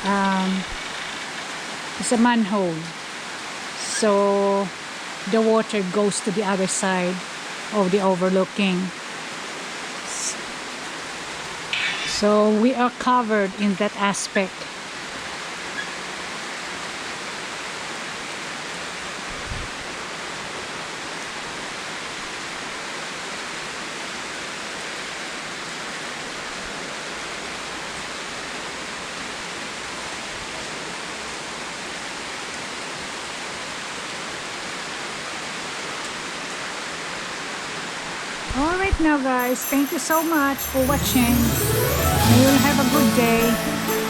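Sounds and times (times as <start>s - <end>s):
heavy rain pouring: 0.0s - 13.6s, 39.4s - 44.0s.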